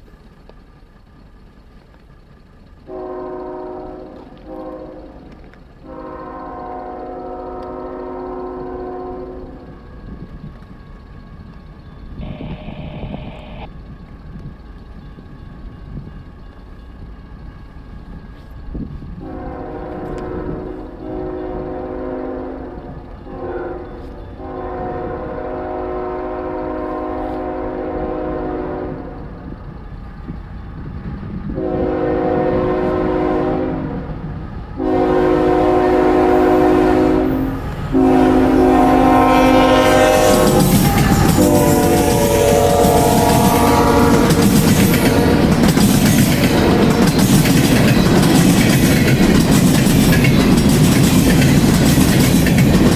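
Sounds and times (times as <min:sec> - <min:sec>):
low diesel rumble: 0:00.0 - 0:23.4
locomotive horn blasts: 0:02.9 - 0:09.6, 0:19.2 - 0:29.2, 0:31.6 - 0:34.1, 0:34.8 - 0:45.6.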